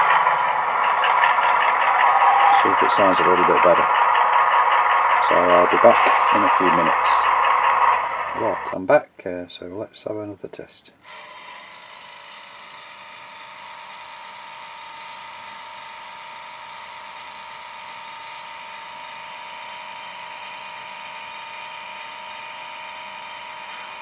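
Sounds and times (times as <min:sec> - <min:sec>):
diesel engine sound through small speaker: 0:00.0 - 0:08.8.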